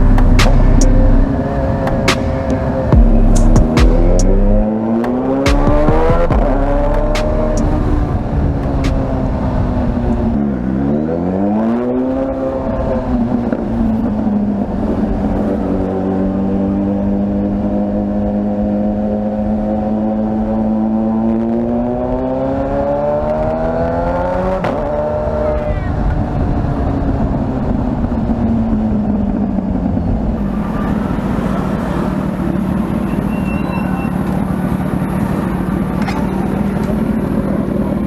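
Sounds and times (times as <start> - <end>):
sharp exhaust crack: 0.0 - 9.2
car engine accelerating: 0.0 - 38.0.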